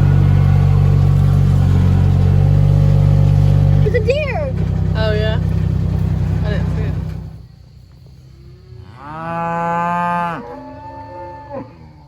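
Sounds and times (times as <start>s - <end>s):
cow mooing: 0.0s - 2.7s, 8.7s - 12.0s.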